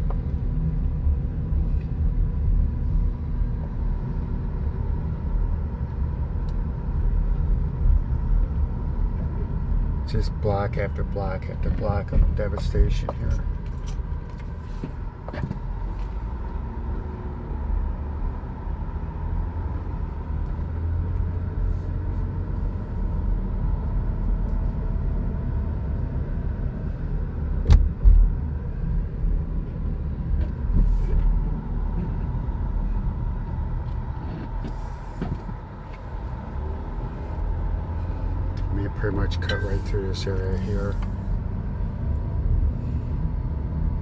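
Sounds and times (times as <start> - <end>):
engine and tyre rumble: 0.0 - 44.0
car knock and thump: 14.8 - 15.6, 27.6 - 28.3, 34.2 - 35.6.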